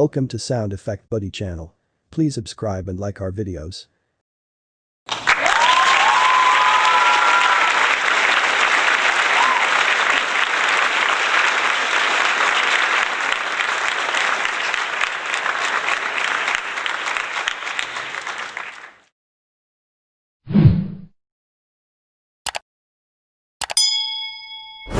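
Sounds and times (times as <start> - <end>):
crowd clapping: 5.1 - 19.1.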